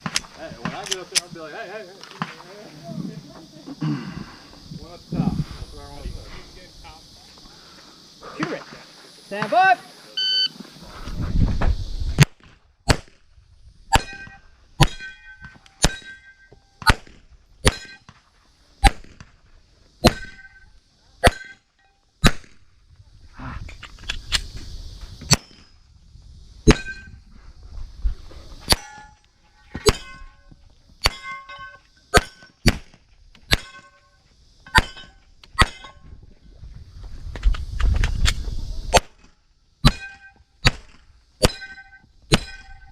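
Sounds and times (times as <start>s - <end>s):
steel target clanging: 13.9s - 16.5s, 17.7s - 18.1s, 20.0s - 21.8s, 26.7s - 27.2s, 28.7s - 32.6s, 33.5s - 34.1s, 34.7s - 36.1s, 39.8s - 40.4s, 41.4s - 42.9s
pistol shots: 39.8s - 42.8s.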